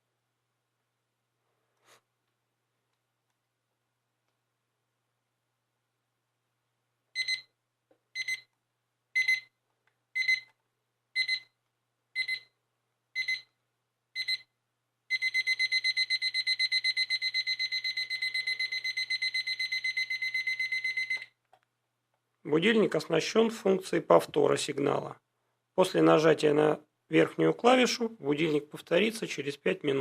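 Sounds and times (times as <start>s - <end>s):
alarm clock beeping: 7.2s - 7.5s, 8.2s - 8.5s, 9.2s - 9.5s, 10.2s - 10.5s, 11.2s - 11.5s, 12.2s - 12.5s, 13.2s - 13.5s, 14.2s - 14.5s, 15.1s - 21.3s.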